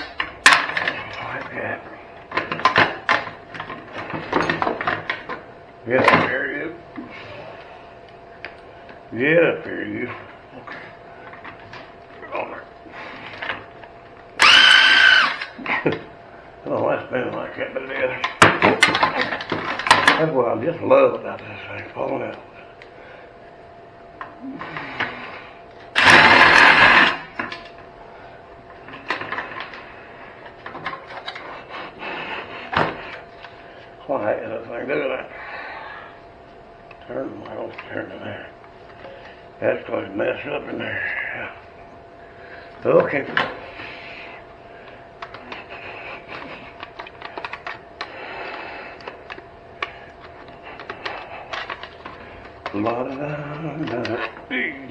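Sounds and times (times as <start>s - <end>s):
handheld electric power tool running: 14.4s - 15.6s, 25.9s - 27.4s.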